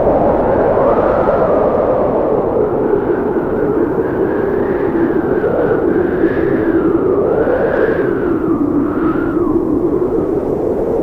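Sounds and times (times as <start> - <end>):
blizzard wind blowing: 0.0 - 11.0.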